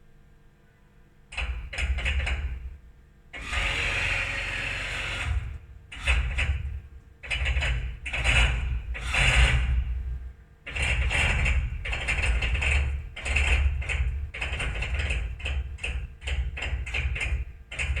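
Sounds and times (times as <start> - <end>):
fast mechanical clicking: 5.1 - 10.0, 10.7 - 18.0.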